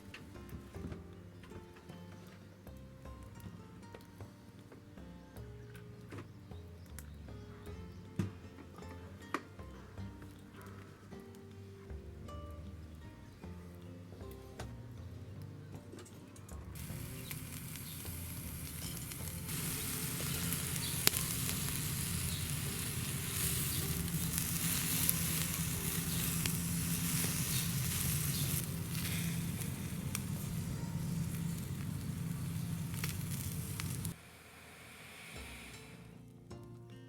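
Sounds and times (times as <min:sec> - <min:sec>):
sharp pops from fire: 0:16.8 - 0:34.2
food sizzling on a grill: 0:16.8 - 0:36.0.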